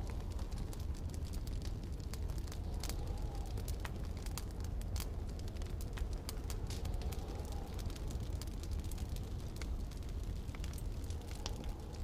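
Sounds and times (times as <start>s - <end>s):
snowstorm wind rumble: 0.0s - 12.0s
wood fire crackling: 0.0s - 12.0s.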